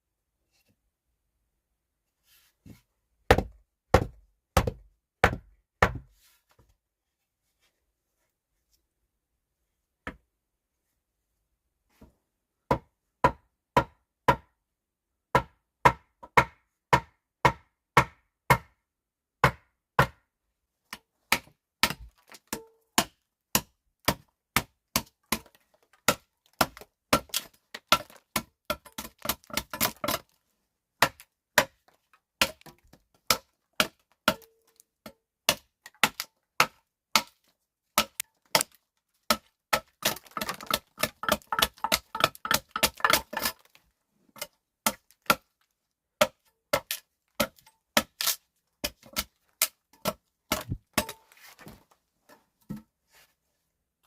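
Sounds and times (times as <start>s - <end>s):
tool chopping wood: 3.3s - 6.1s, 12.7s - 14.5s, 15.3s - 18.8s, 19.4s - 20.2s, 21.3s - 30.4s, 31.0s - 37.4s, 38.0s - 43.8s, 44.4s - 45.5s, 46.2s - 51.8s.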